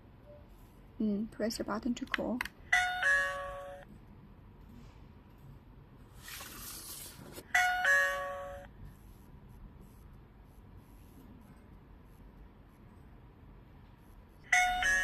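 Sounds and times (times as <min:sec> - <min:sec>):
doorbell ding-dong chime: 0:02.7 - 0:03.9, 0:07.5 - 0:08.7, 0:14.5 - 0:15.0.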